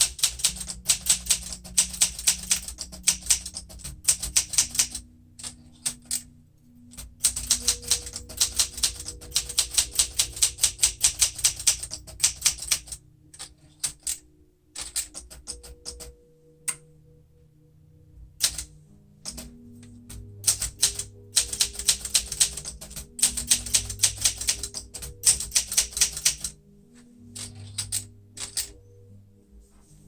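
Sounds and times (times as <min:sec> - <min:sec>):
manual typewriter typing: 0:00.0 - 0:06.3, 0:06.9 - 0:14.2, 0:14.8 - 0:16.2, 0:18.4 - 0:19.5, 0:20.1 - 0:26.6, 0:27.4 - 0:28.8.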